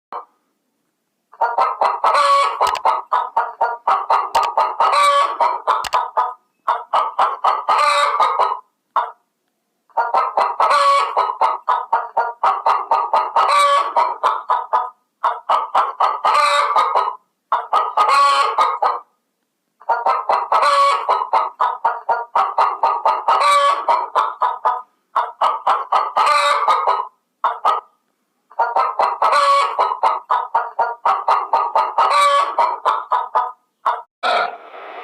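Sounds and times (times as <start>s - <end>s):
sharp loud chicken call: 1.4s - 8.6s, 10.2s - 11.6s, 13.2s - 14.4s, 17.8s - 19.0s, 20.0s - 21.5s, 22.4s - 24.3s, 25.4s - 27.8s, 28.7s - 30.4s, 31.1s - 35.0s
chickens clucking: 1.4s - 9.2s, 9.9s - 19.1s, 19.8s - 34.6s.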